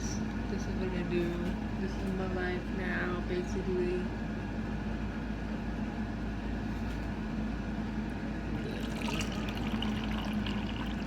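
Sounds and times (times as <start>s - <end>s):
water pouring into a container: 8.6s - 11.0s.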